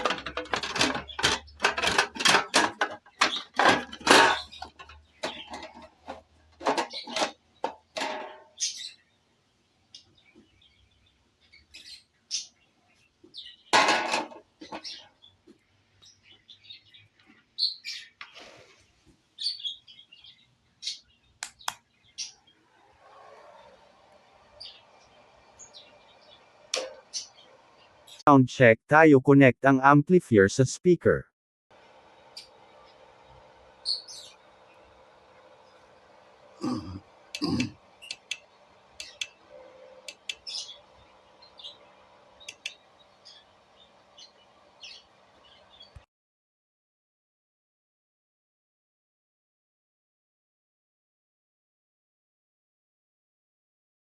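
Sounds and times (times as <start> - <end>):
handling knocks and clicks: 0.0 - 8.4
small birds chirping: 8.5 - 13.8, 14.6 - 22.6, 24.5 - 28.2, 32.3 - 35.9, 36.6 - 39.4, 40.0 - 46.0
sharp clicks: 37.4 - 38.4, 39.0 - 39.4, 40.1 - 40.5, 42.4 - 42.8.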